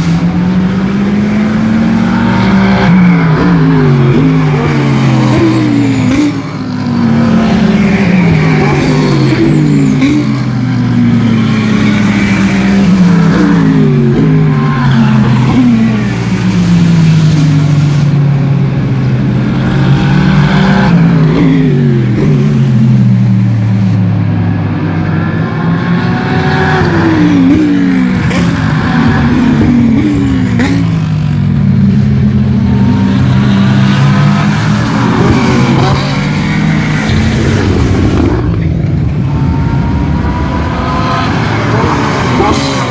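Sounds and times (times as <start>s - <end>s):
race cars passing: 0.0s - 42.9s.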